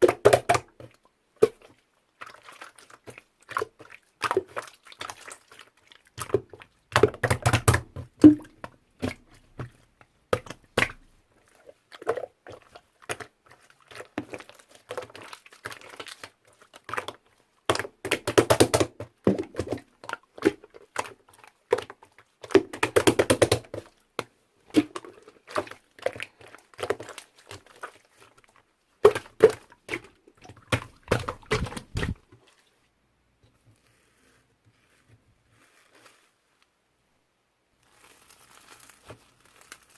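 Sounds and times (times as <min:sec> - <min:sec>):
slime squished by hand: 0:24.7 - 0:32.2.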